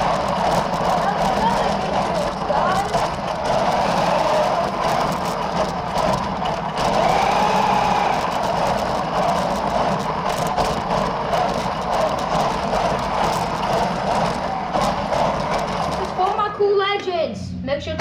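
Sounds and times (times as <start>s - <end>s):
toy car motor whining: 0.0s - 5.7s, 6.8s - 10.8s.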